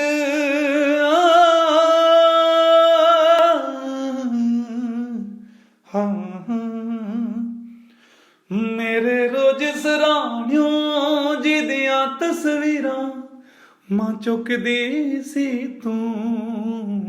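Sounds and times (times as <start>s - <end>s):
person singing unaccompanied: 0.0s - 7.7s.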